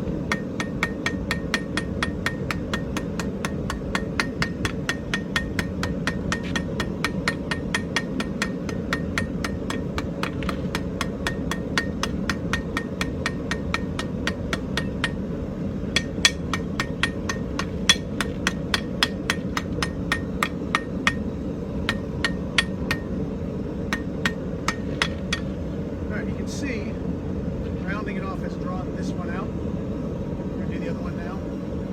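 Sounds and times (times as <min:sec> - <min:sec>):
hammer striking iron on anvil: 0:00.2 - 0:15.3, 0:15.9 - 0:23.2, 0:23.9 - 0:25.6.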